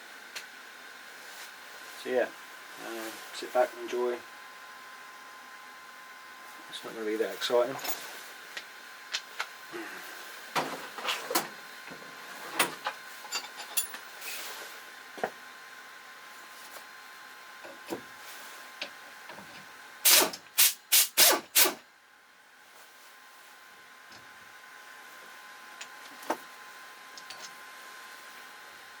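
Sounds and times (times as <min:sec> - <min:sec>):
faint steady whine: 0:00.0 - 0:21.0
loud short noisy strokes: 0:20.0 - 0:21.8.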